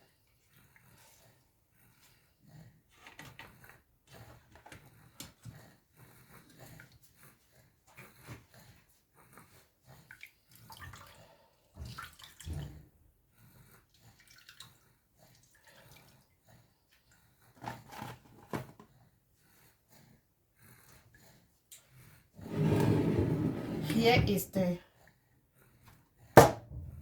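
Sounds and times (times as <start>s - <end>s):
containers knocking: 26.4s - 27.0s.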